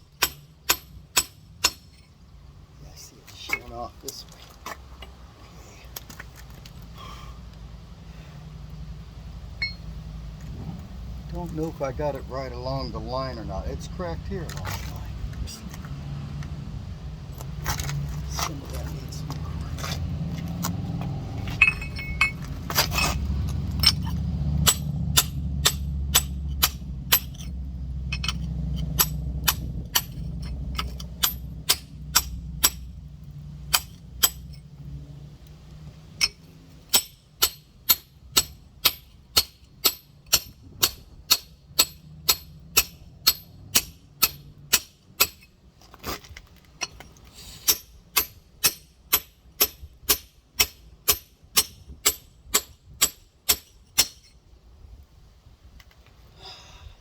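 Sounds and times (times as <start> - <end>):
low rumble: 8.5 - 36.8.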